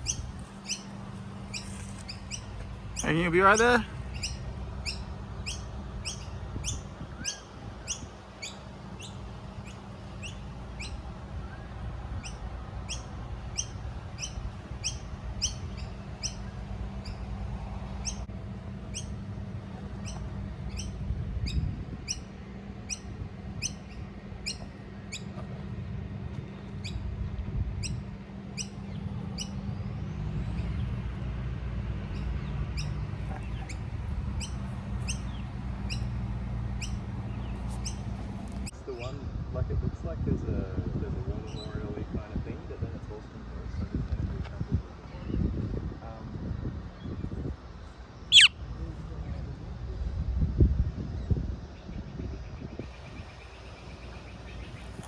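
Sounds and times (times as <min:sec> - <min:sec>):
young bird chirping: 0:00.0 - 0:11.6, 0:12.2 - 0:16.4, 0:20.0 - 0:22.2, 0:22.9 - 0:25.3, 0:28.6 - 0:29.6, 0:34.4 - 0:36.1, 0:48.3 - 0:48.5.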